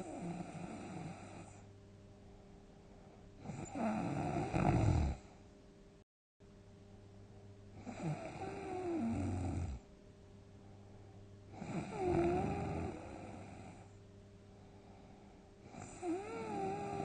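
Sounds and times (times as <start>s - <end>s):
person snoring heavily: 0.0s - 1.5s, 3.4s - 5.3s, 7.8s - 9.8s, 11.6s - 13.8s, 15.7s - 17.0s
quiet breathing: 0.0s - 5.6s, 6.9s - 17.0s.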